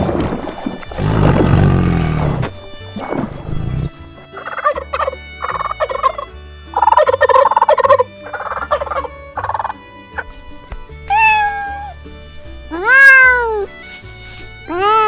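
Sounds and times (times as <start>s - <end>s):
turkey gobbling: 4.4s - 9.8s.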